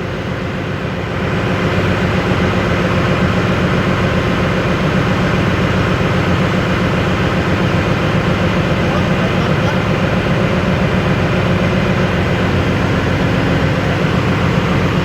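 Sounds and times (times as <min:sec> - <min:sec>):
air compressor droning: 0:07.2 - 0:15.0.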